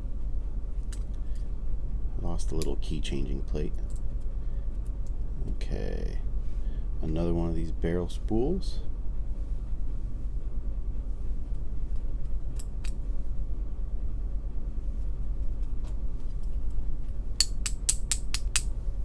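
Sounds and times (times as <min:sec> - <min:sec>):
low hum: 0:00.0 - 0:19.0
sharp metallic clicks: 0:17.4 - 0:18.7.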